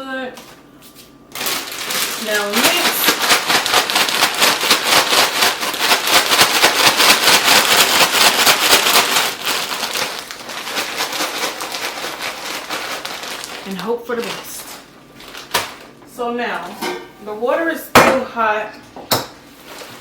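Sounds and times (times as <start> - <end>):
chip bag rustling and crackling: 1.3 - 15.9, 19.6 - 20.0.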